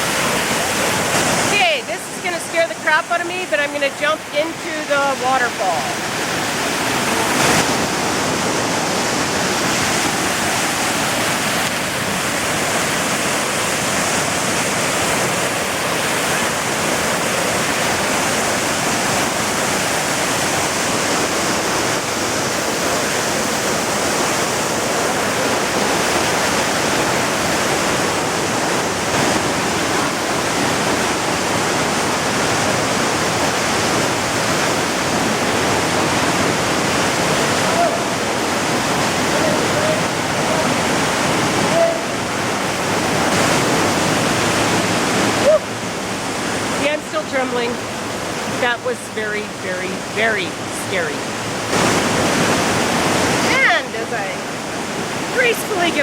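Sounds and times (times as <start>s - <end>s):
waterfall rushing: 0.0s - 56.0s.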